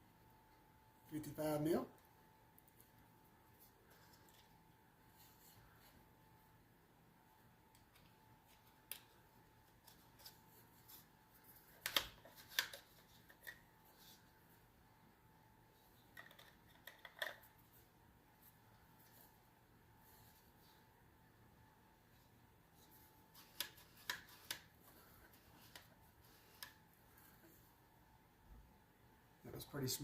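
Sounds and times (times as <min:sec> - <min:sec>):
faint high hum: 0:00.0 - 0:30.0
soft handling clicks and rustles: 0:02.0 - 0:06.1, 0:22.0 - 0:27.8.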